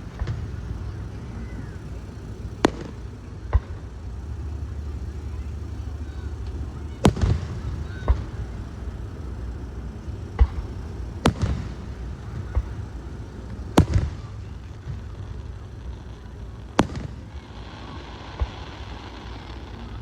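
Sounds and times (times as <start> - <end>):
dull thuds: 0.0 - 14.2
low rumble: 0.0 - 17.0
firework shells bursting: 0.0 - 17.4.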